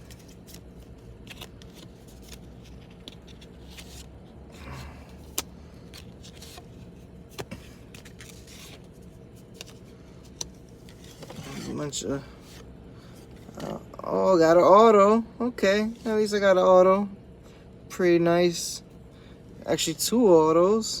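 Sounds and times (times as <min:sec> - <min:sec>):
trading cards rustling: 0:00.0 - 0:13.8
low steady hum: 0:00.0 - 0:21.0.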